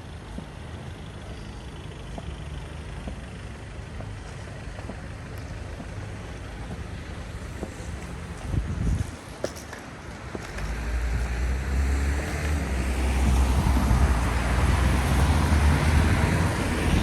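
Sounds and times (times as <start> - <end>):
traffic engines rumbling: 0.0 - 17.0
tyres hissing on wet road: 10.6 - 17.0.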